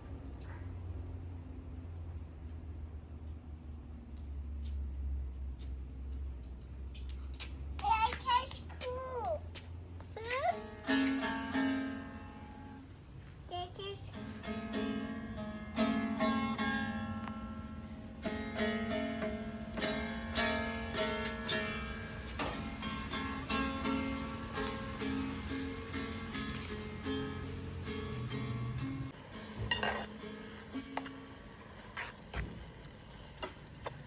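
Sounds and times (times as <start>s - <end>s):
plucked string instrument music: 10.5s - 12.8s, 13.6s - 31.7s.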